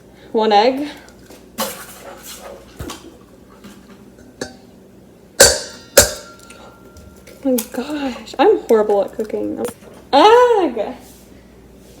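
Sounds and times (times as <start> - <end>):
bowl ringing: 5.4 - 7.4.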